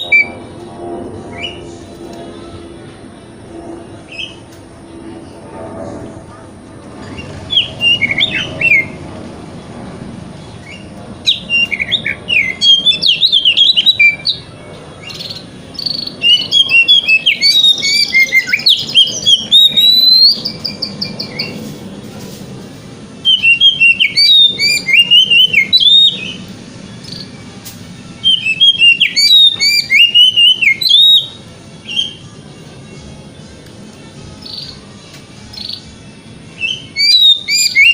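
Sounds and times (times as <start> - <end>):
bird singing whistled phrases: 0.0 - 0.4, 1.3 - 1.7, 4.1 - 4.4, 7.0 - 9.0, 10.6 - 21.6, 23.2 - 27.3, 28.2 - 32.2, 36.6 - 37.9.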